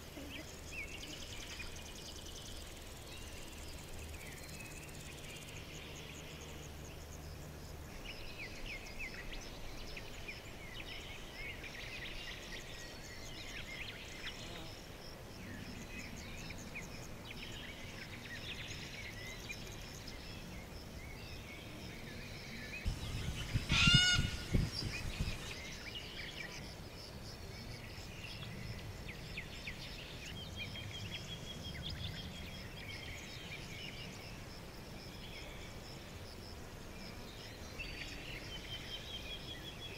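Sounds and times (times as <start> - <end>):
small birds chirping: 16.1 - 34.3
loud harsh bird call: 22.9 - 25.5.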